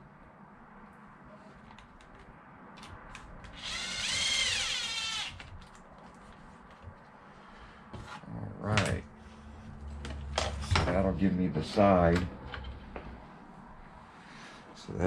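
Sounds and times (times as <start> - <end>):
power tool motor whine: 3.6 - 5.4.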